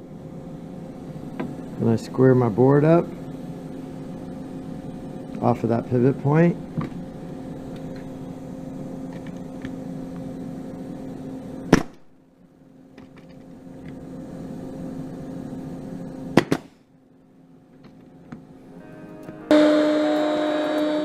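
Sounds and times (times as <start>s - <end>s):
steady machine hum: 0.0s - 21.0s
nailer firing into wood: 16.4s - 16.8s.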